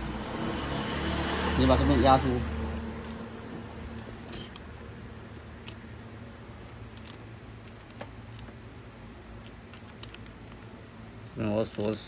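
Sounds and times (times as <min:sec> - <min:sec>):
hand tools clicking: 0:00.3 - 0:00.6, 0:03.0 - 0:04.7, 0:09.4 - 0:10.7, 0:11.6 - 0:12.0.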